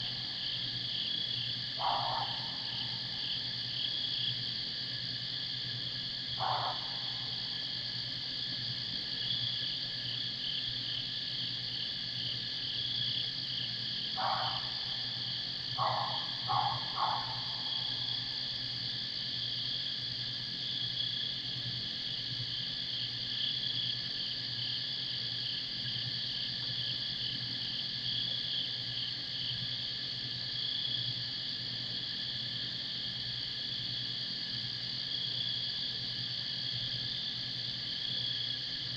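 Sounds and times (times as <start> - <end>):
night insects chorus: 0.0 - 38.9
animal calls: 1.8 - 2.7, 6.4 - 7.0, 14.2 - 14.7, 15.8 - 18.0.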